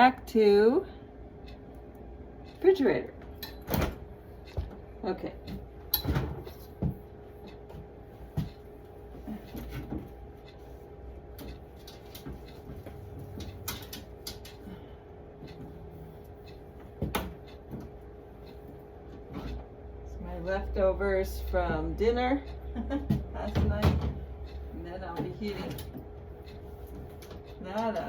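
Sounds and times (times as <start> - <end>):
refrigerator hum: 0.0 - 28.0
containers and shelves knocking: 23.1 - 24.2.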